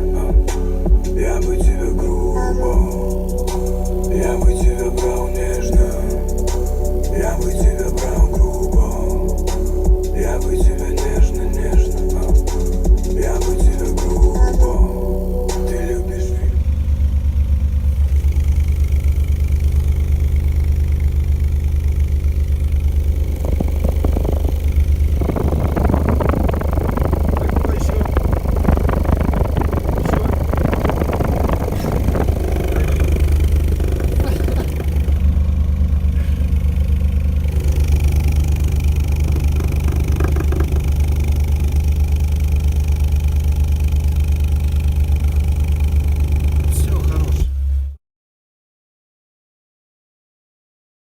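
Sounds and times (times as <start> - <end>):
voices: 0.0 - 16.6, 23.4 - 35.4, 46.7 - 47.5
subwoofer low test tone: 0.0 - 48.0.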